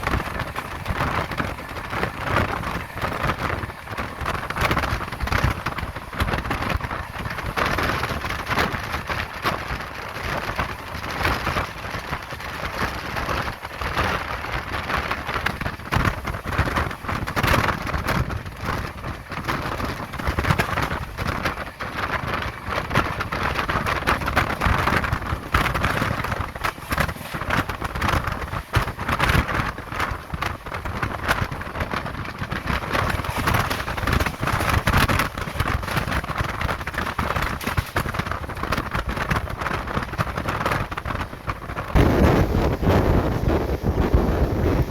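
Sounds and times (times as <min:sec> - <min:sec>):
train wind and wheels rushing: 0:00.0 - 0:44.9
track clicks and rattles: 0:22.3 - 0:42.0.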